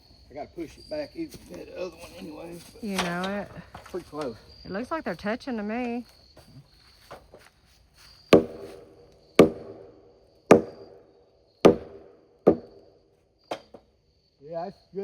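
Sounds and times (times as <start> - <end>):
hammer striking beam: 8.4 - 8.8, 9.4 - 9.9, 10.5 - 11.0, 11.7 - 12.8.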